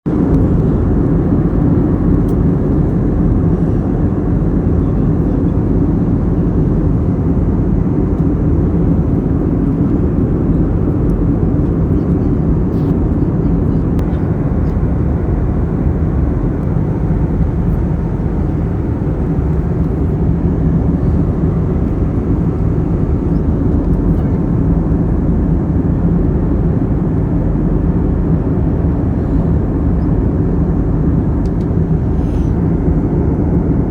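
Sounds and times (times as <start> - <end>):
airliner engines roaring: 0.0 - 33.9
rushing air: 31.0 - 33.9.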